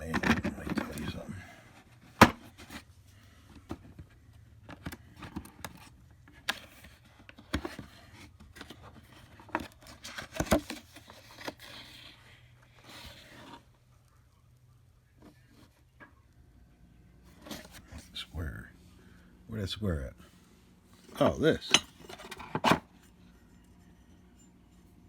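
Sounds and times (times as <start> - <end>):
soft paper rustles: 0.0 - 16.0.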